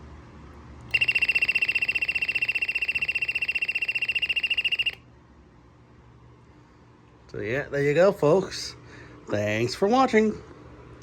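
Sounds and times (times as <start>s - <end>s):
shrill pulsing alarm tone: 0.9s - 5.0s.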